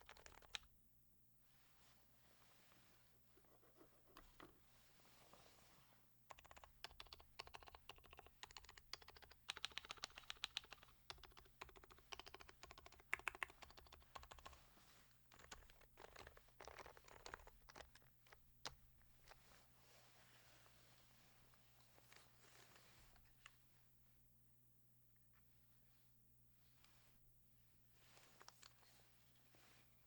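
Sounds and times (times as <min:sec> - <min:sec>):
quiet keyboard typing: 0:00.0 - 0:00.7, 0:06.3 - 0:14.6, 0:15.3 - 0:19.4.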